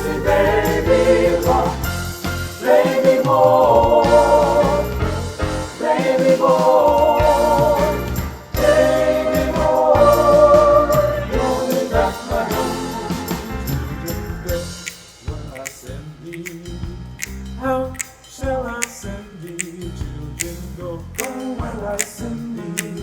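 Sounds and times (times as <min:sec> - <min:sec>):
choir singing with vibrato: 0:00.0 - 0:15.2, 0:21.2 - 0:23.0.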